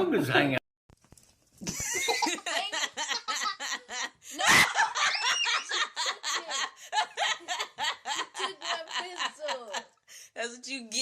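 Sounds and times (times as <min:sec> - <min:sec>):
person laughing hard: 0:01.6 - 0:09.8.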